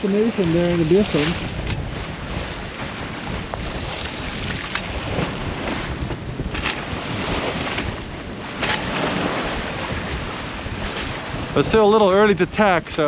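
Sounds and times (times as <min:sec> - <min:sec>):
water rushing along hull: 0:00.0 - 0:13.0
water swishes: 0:00.0 - 0:13.0
wind buffeting microphone: 0:00.0 - 0:13.0.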